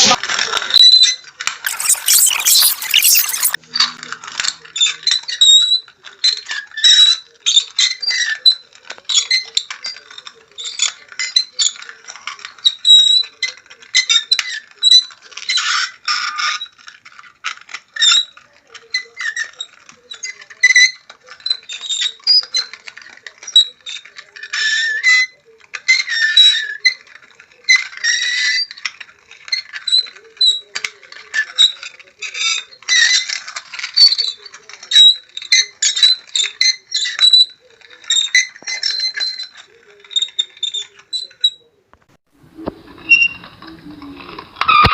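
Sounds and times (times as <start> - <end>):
high-pitched creaking and squeaking: 1.7 - 3.6.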